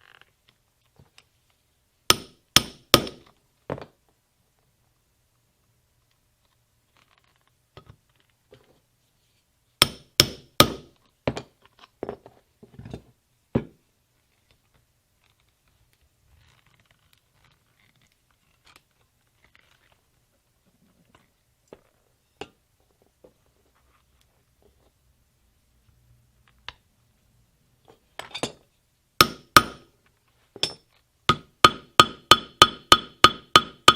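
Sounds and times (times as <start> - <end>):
hammer tapping metal rivets: 2.1 - 3.9, 9.8 - 11.5, 29.2 - 29.9, 30.6 - 33.9.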